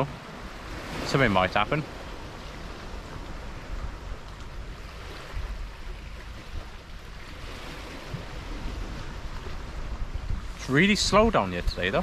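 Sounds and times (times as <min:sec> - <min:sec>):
sea washing on shore: 0:00.0 - 0:12.0
wind buffeting microphone: 0:00.0 - 0:12.0.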